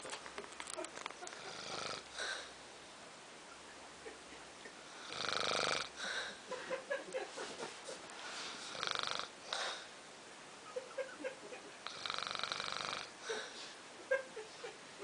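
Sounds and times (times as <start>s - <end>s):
person snoring: 1.4s - 2.6s, 4.9s - 6.4s, 8.6s - 9.9s, 11.8s - 13.6s.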